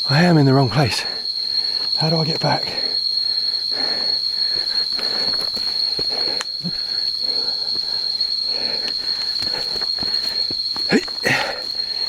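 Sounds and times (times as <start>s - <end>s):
cicadas droning: 0.0s - 12.0s
person breathing heavily: 2.7s - 12.0s.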